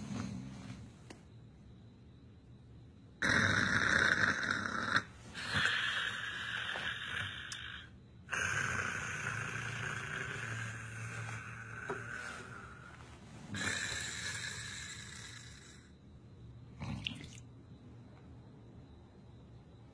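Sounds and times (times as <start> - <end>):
man snoring: 3.2 - 15.9.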